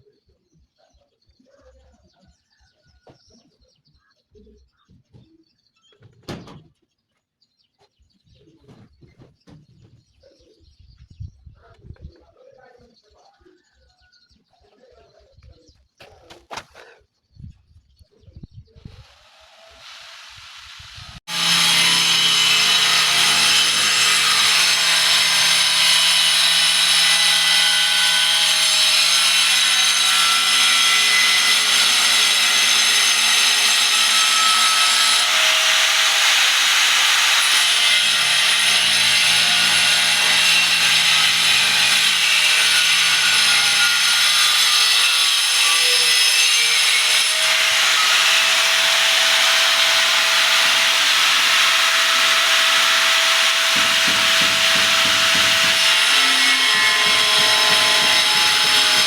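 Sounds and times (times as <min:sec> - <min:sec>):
power tool whining on wood: 0:19.0 - 0:59.0.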